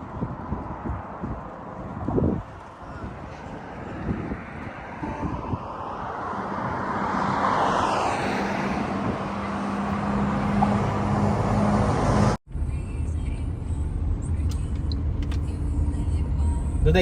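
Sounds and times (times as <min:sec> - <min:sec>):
vehicle engine passing by: 0:00.2 - 0:12.4.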